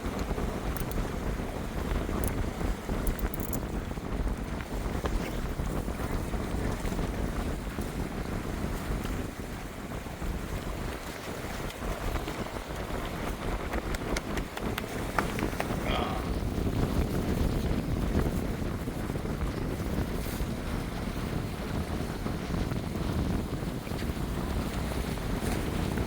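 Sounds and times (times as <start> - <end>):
wind buffeting microphone: 0.0 - 26.0
ocean surf: 10.0 - 17.5.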